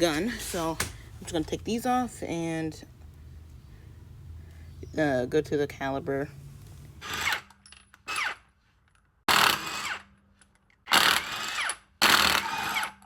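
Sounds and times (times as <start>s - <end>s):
impact wrench spinning off lug nuts: 9.3s - 10.1s, 10.9s - 13.0s.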